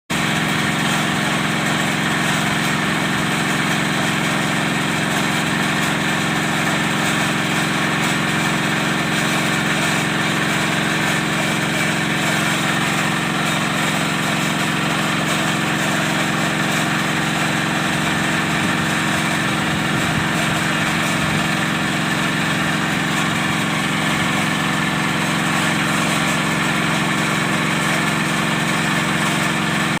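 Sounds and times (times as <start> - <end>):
machine engine droning: 0.2 - 30.0.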